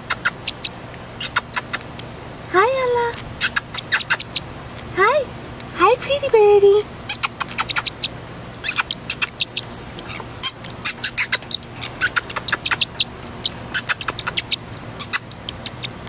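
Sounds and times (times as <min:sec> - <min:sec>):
parrotlet chirping: 0:00.0 - 0:01.9, 0:02.8 - 0:04.6, 0:07.1 - 0:16.0.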